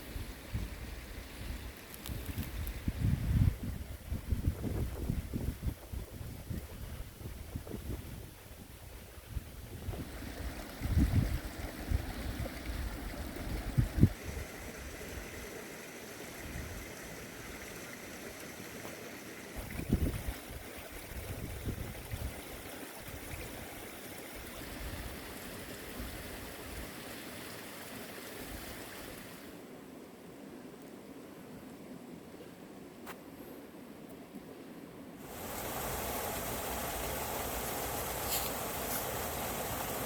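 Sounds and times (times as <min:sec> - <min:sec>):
wind buffeting microphone: 0:02.1 - 0:14.2, 0:19.6 - 0:22.4
running water rushing: 0:35.2 - 0:40.0.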